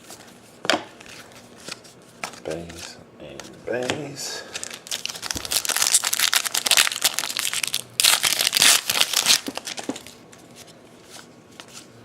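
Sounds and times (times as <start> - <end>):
wrapper crinkling: 4.4 - 10.2.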